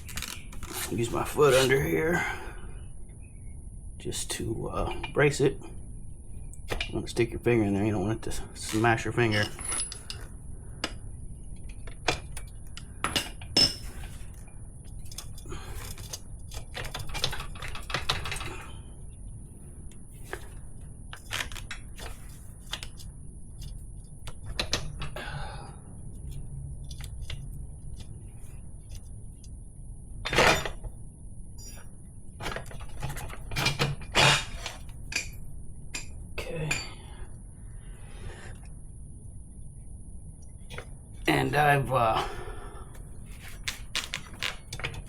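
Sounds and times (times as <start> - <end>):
metal tools clinking and scraping: 0.0 - 2.3, 6.7 - 10.3, 11.8 - 18.8, 30.2 - 30.9, 31.6 - 35.4, 36.0 - 37.1.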